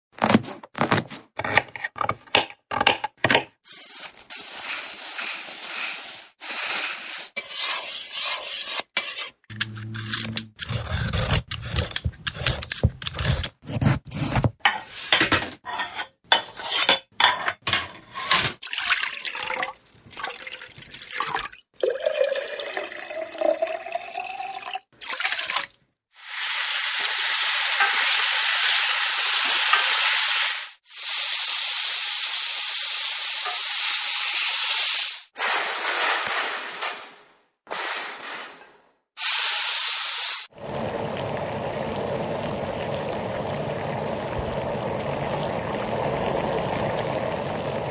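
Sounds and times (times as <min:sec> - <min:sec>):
stirring: 0:03.6 - 0:15.1
low hum: 0:09.5 - 0:10.6
dishes and cutlery clattering: 0:14.6 - 0:18.6
running and dripping water: 0:18.6 - 0:26.3, 0:40.4 - 0:47.9.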